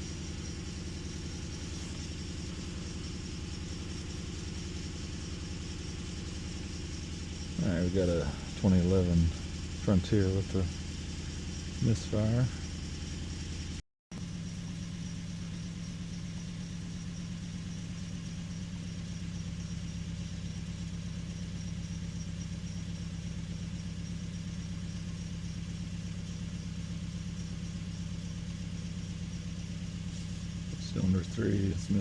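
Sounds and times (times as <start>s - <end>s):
engine idling with misfire: 0.0s - 32.0s.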